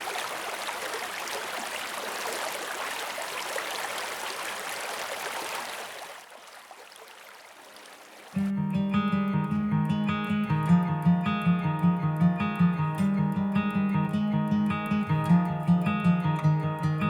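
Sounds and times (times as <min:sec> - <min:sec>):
water rushing: 0:00.0 - 0:08.5
acoustic guitar music: 0:08.4 - 0:17.0.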